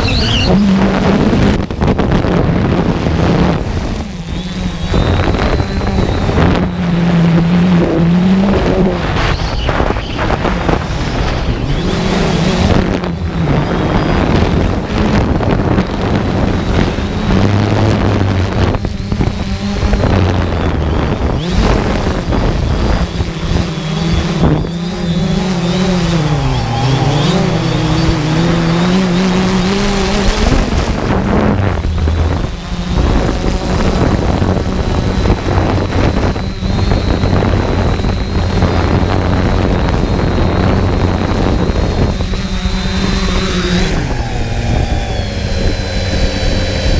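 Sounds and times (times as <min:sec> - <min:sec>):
electric motor whining: 0:00.0 - 0:46.9
wind buffeting microphone: 0:00.0 - 0:46.9.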